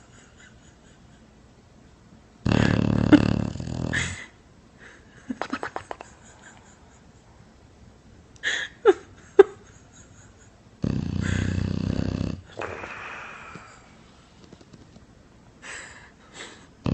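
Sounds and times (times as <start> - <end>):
dog snoring: 2.4 - 4.2, 10.8 - 12.8
soft breathy breath: 12.6 - 14.7.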